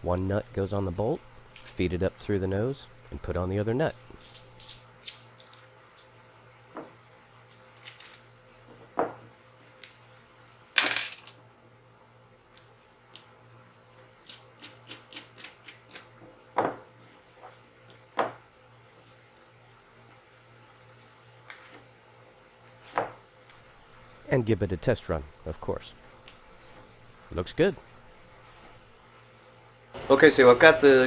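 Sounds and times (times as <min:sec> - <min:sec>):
low steady hum: 0:00.0 - 0:08.6, 0:23.0 - 0:31.0
small metal hardware clicking: 0:03.9 - 0:06.1.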